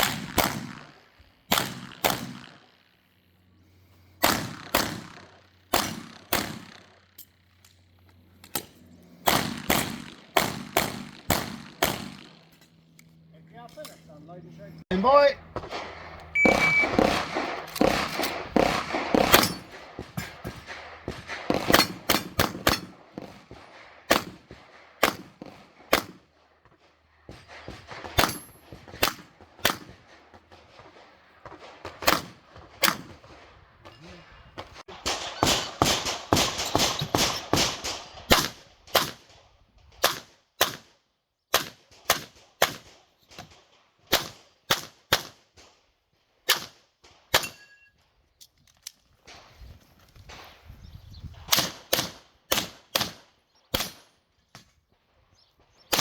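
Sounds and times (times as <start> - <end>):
handgun shots in rapid strings: 15.8 - 23.4.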